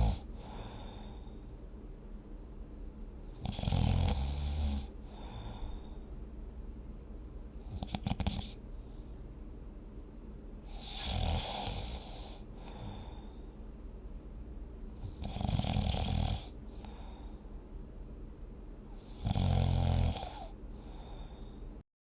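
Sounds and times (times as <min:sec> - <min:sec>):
person snoring: 0:00.0 - 0:01.4, 0:03.4 - 0:06.0, 0:07.7 - 0:08.6, 0:10.7 - 0:13.4, 0:15.0 - 0:17.4, 0:19.0 - 0:21.6.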